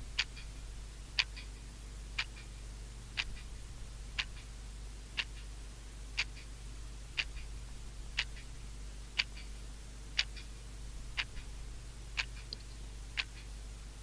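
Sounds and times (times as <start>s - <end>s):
low steady hum: 0.0s - 14.0s
clock ticking: 1.2s - 1.5s, 8.2s - 8.5s, 9.2s - 10.6s.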